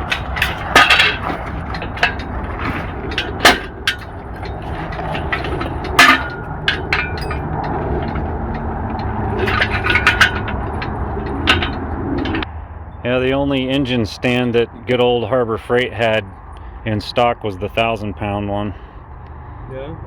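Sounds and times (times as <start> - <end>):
metallic clanks of tools: 0.0 - 12.5
steady low rumble: 0.0 - 19.6.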